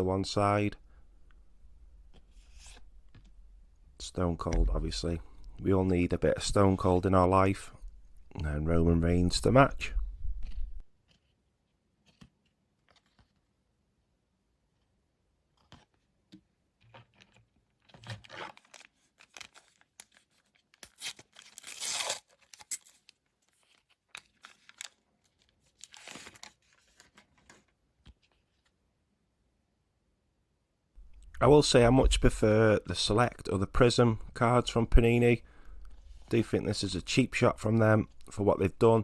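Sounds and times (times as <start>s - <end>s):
paper rustling and crinkling: 12.0s - 13.5s, 16.8s - 28.8s.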